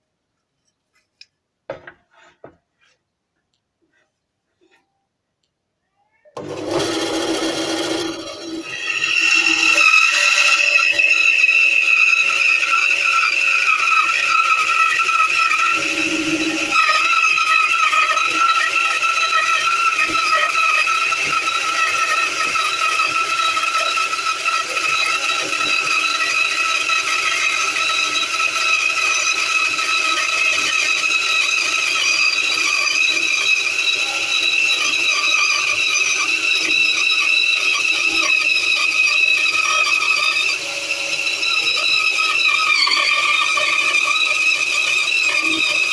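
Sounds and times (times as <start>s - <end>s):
bandsaw whining and rasping: 6.4s - 45.9s.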